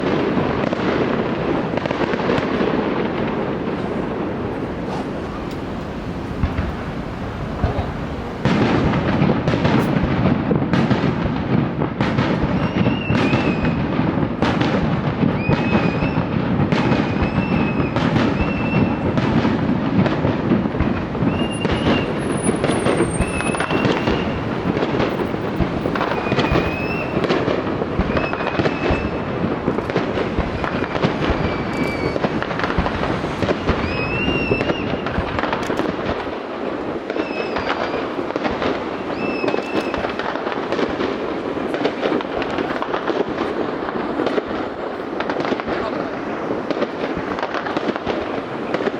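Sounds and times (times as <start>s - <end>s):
fireworks bangs and crackling: 0.0s - 48.9s
firework whistles: 12.4s - 13.9s, 15.2s - 19.2s, 21.2s - 36.2s, 37.0s - 41.1s.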